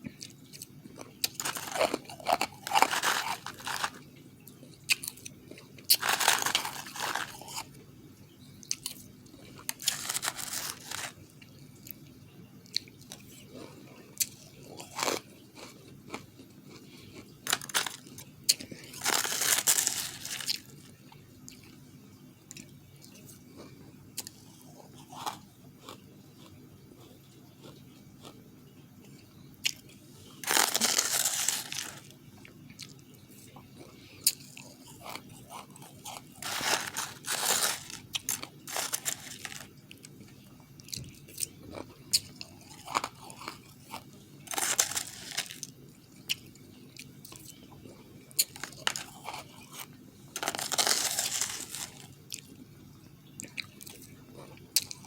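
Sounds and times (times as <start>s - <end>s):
ice crunching bites: 1.2s - 4.0s, 5.9s - 7.7s, 9.7s - 11.2s, 17.5s - 20.7s, 30.4s - 32.1s, 36.0s - 39.7s, 42.4s - 45.7s, 50.4s - 52.5s.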